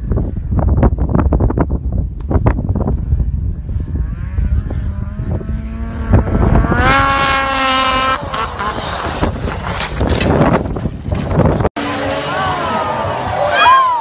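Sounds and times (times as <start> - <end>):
wind buffeting microphone: 0.0 - 11.8
snowmobile engine revving: 3.8 - 14.0.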